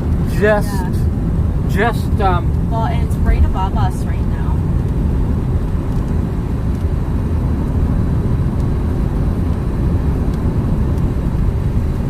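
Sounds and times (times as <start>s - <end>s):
car road and engine noise: 0.0s - 12.0s.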